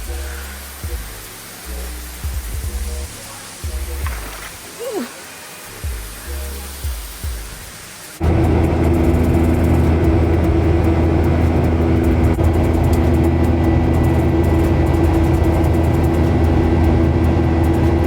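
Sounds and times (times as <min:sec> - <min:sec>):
vehicle interior drone: 0:08.2 - 0:18.0.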